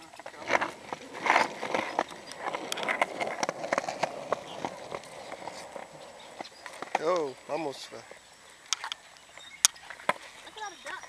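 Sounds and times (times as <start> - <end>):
footsteps on a path: 0.1 - 7.0.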